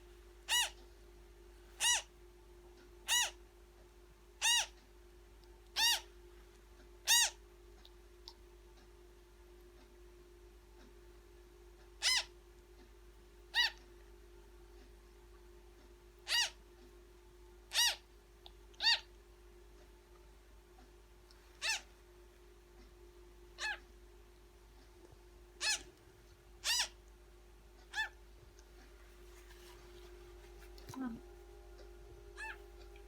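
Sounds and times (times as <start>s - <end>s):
steady low hum: 0.0s - 33.0s
parrot chick begging calls: 0.5s - 0.8s, 1.8s - 2.1s, 3.0s - 3.4s, 4.4s - 4.8s, 5.7s - 6.1s, 7.0s - 7.4s, 12.0s - 12.3s, 13.5s - 13.8s, 16.2s - 16.6s, 17.7s - 18.0s, 18.8s - 19.1s, 21.6s - 21.9s, 23.6s - 23.8s, 25.6s - 25.9s, 26.6s - 27.0s, 27.9s - 28.2s, 32.4s - 32.6s.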